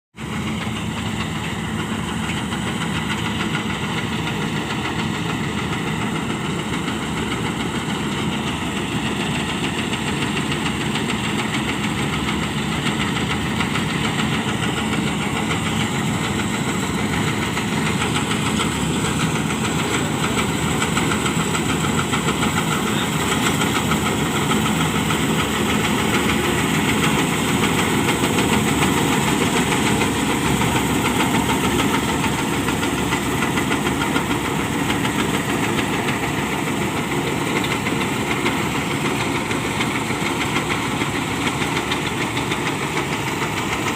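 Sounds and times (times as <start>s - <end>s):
diesel engine running: 0.2s - 43.9s.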